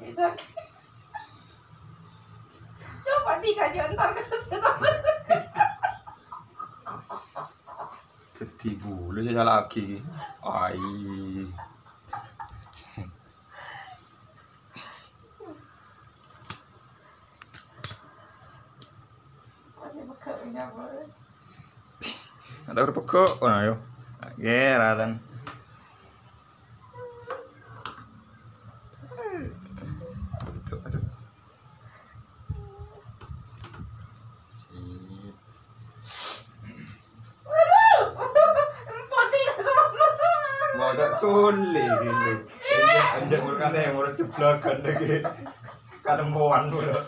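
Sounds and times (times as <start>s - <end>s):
low background hum: 0.0s - 47.0s
brief hiss: 36.0s - 36.6s.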